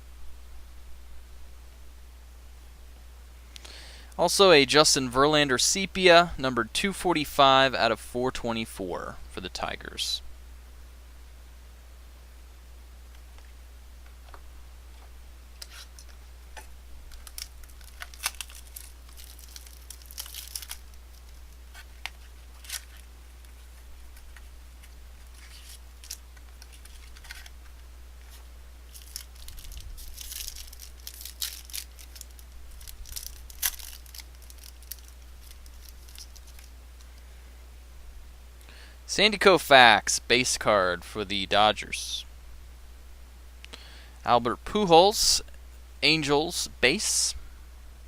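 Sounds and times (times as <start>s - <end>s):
cards rustling and clicking: 15.6s - 37.2s
packaging tearing and crinkling: 17.1s - 36.7s.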